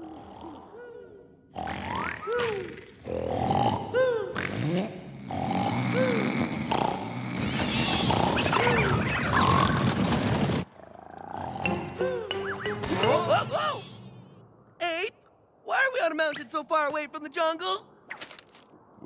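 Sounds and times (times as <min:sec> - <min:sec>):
cartoon snoring: 0:00.0 - 0:08.8, 0:10.9 - 0:12.1
background music: 0:11.4 - 0:14.5.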